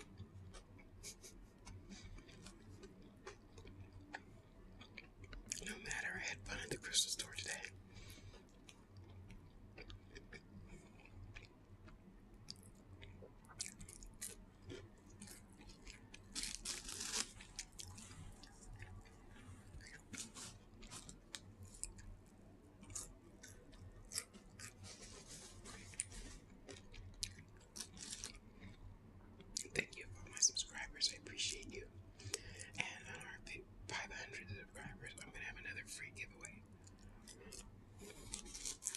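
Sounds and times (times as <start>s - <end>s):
person chewing crunchy food: 1.6s - 5.7s, 7.9s - 28.8s, 36.8s - 38.9s.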